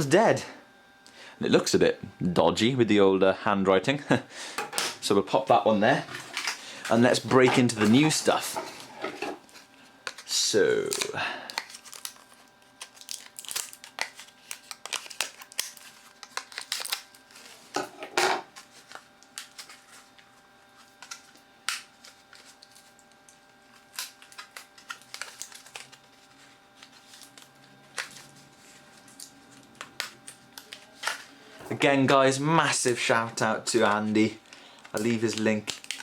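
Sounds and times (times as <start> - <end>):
packaging rustling: 5.8 - 17.8, 18.5 - 31.4, 32.8 - 36.0
packaging crinkling and clicking: 9.4 - 17.7, 18.5 - 20.3, 21.0 - 28.3, 29.0 - 31.3, 33.7 - 36.0.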